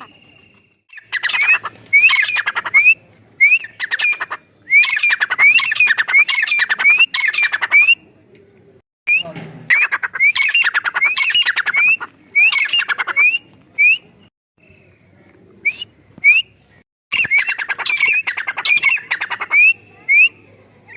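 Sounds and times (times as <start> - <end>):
bird harsh rattling calls: 0.9 - 2.7, 17.1 - 19.5.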